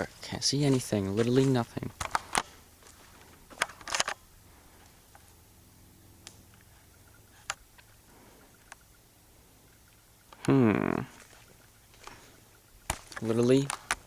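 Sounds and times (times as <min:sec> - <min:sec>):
camera handling clicks and rustles: 0:01.9 - 0:04.2.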